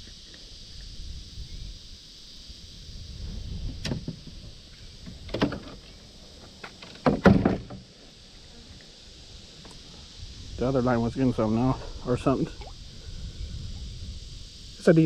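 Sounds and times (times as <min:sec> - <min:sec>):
insects buzzing: 0:00.0 - 0:15.0
knocks against a kayak: 0:06.6 - 0:07.9.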